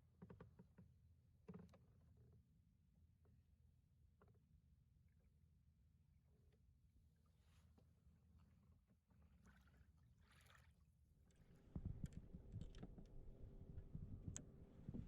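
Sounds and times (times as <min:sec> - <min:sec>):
faint water sounds: 0:09.2 - 0:15.0
soft water splashes: 0:09.3 - 0:13.8.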